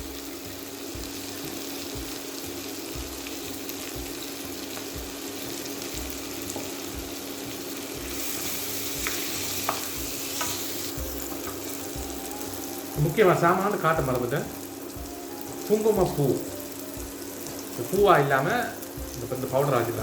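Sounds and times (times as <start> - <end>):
vegetables sizzling in oil: 0.0 - 20.0
utensil clicking on pan: 9.0 - 11.7.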